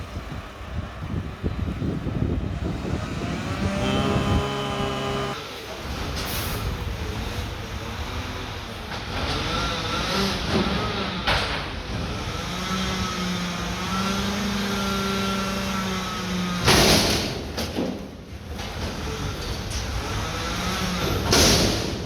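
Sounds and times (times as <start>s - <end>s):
garbage truck engine drone: 0.0s - 17.5s.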